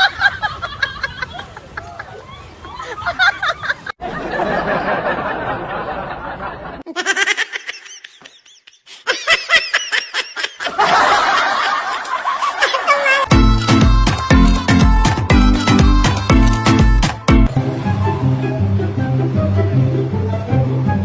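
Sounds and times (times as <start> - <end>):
people laughing: 0.0 - 13.3.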